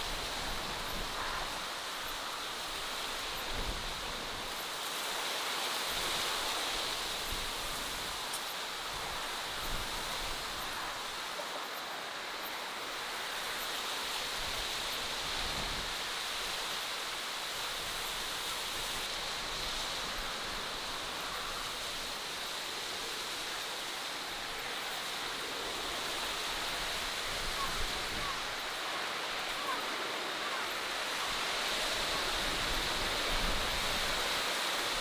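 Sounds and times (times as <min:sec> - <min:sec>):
outdoor ambience hiss: 0:00.0 - 0:35.0.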